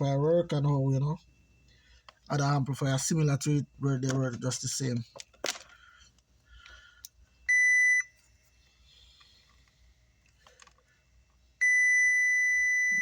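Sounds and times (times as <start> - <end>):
multimeter continuity beeps: 7.4 - 8.2, 11.6 - 13.0.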